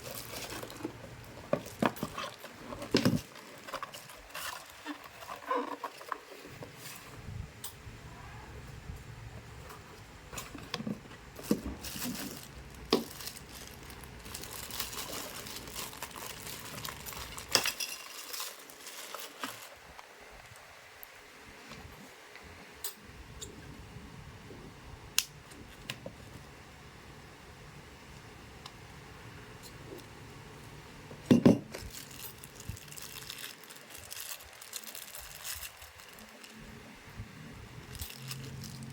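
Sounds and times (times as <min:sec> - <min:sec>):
plastic packaging crinkling: 0:00.0 - 0:06.5, 0:10.8 - 0:20.6, 0:31.7 - 0:36.8, 0:37.8 - 0:38.9
hard items knocking: 0:31.3 - 0:31.7.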